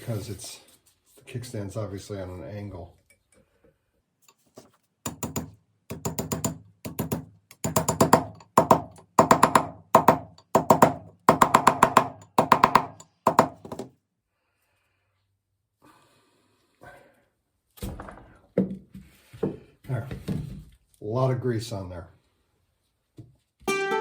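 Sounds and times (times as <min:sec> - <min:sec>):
hammer striking metal punch: 0:05.1 - 0:13.8.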